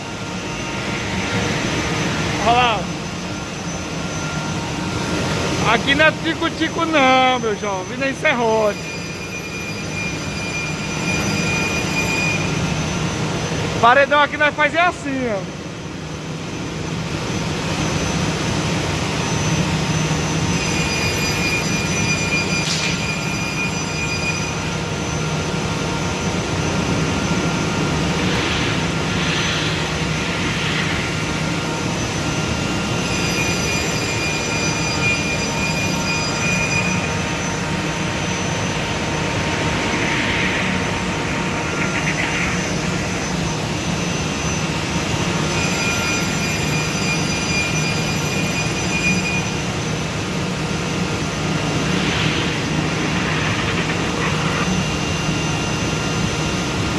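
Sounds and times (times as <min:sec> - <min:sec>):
high blade whine: 0:00.0 - 0:56.9.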